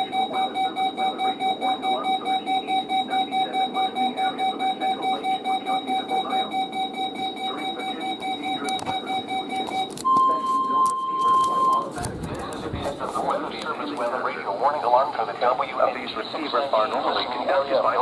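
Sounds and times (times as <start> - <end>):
pulsing electronic alarm beep: 0.0 - 11.9.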